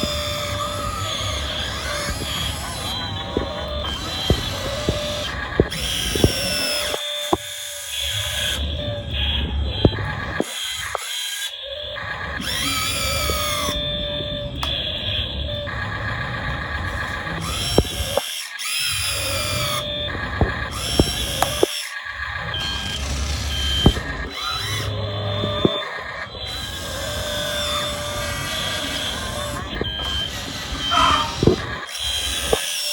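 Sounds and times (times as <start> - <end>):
sharp clicks: 0.0 - 8.3, 16.2 - 32.9
model excavator motors whining: 0.0 - 32.9.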